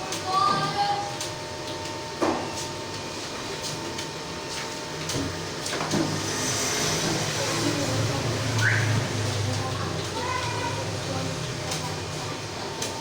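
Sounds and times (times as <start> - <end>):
steady room hum: 0.0 - 13.0.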